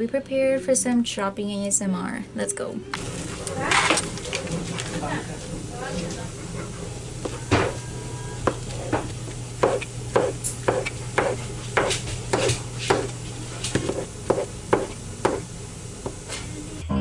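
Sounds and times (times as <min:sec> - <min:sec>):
knife chopping on cutting board: 0:08.4 - 0:16.3.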